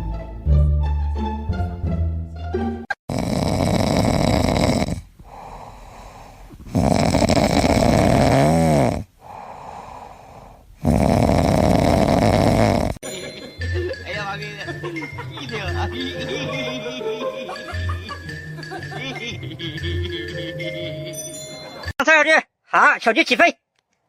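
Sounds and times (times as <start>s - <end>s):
pet snoring loudly: 3.0s - 13.0s
quiet breaths out: 5.0s - 6.8s, 9.2s - 10.8s.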